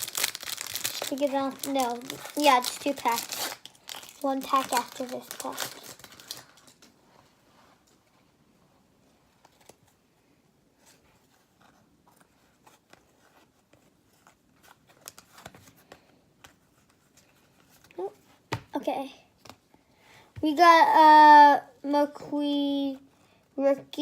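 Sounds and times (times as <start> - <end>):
trading cards rustling and clicking: 0.0 - 6.9.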